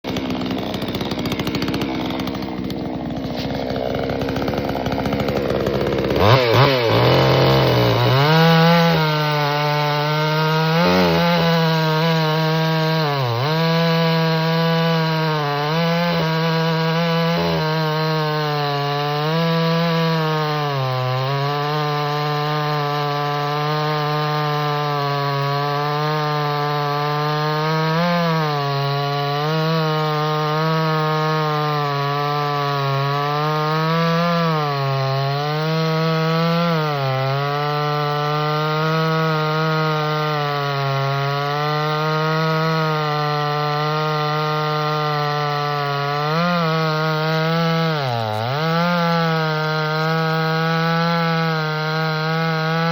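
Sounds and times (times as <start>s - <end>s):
chainsaw cutting wood: 0.0s - 52.9s.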